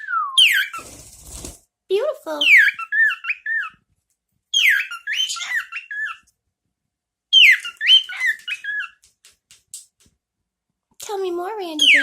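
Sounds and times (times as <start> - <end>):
cockatiel whistling: 4.6 - 6.2.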